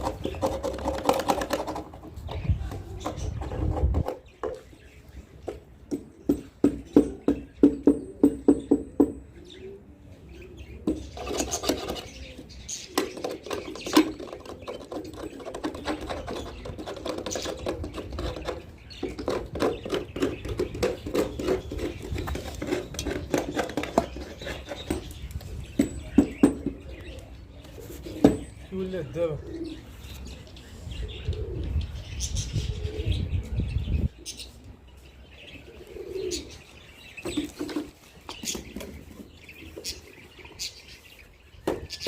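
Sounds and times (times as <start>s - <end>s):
clicks knocks and scrapes: 0.0s - 4.7s, 10.9s - 12.2s, 12.9s - 27.2s
pigeons cooing: 0.0s - 42.0s.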